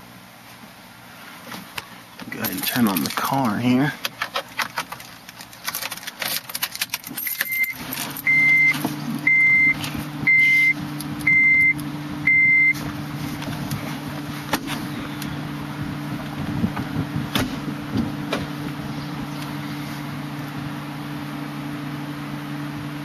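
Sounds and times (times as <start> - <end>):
car engine starting and idling: 1.7 - 23.0
keys jingling in ignition: 2.3 - 10.7
dashboard warning chime: 7.4 - 12.8.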